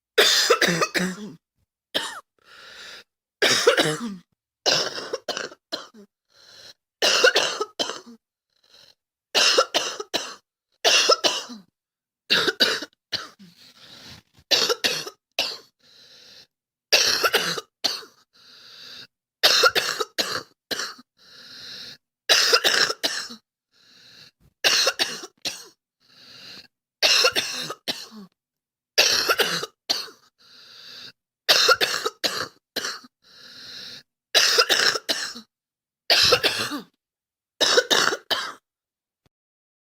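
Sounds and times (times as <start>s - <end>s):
girl coughing: 0.2s - 1.4s, 2.0s - 2.2s, 3.4s - 6.0s, 7.0s - 8.2s, 9.4s - 11.6s, 14.5s - 15.7s, 17.0s - 18.1s, 31.5s - 33.0s, 34.4s - 35.5s, 36.1s - 36.9s, 37.6s - 38.6s.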